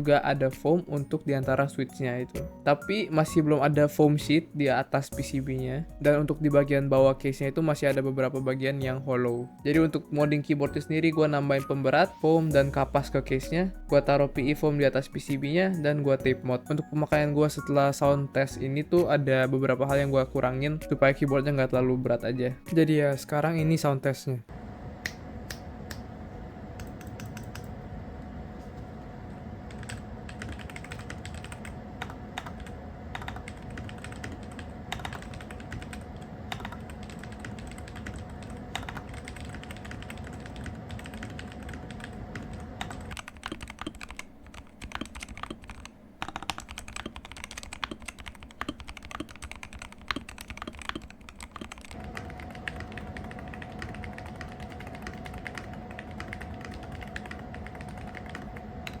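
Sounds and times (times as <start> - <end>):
faint steady hum: 0.0 - 59.0
keyboard keystroke clicks: 42.8 - 52.9.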